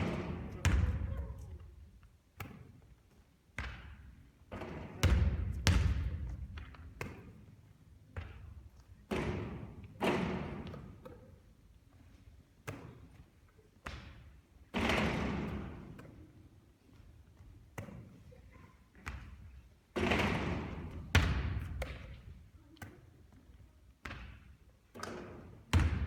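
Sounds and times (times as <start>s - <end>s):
basketball bouncing: 0.0s - 1.6s, 3.6s - 7.5s, 8.1s - 11.2s, 12.6s - 13.2s, 13.8s - 16.2s, 19.0s - 26.0s.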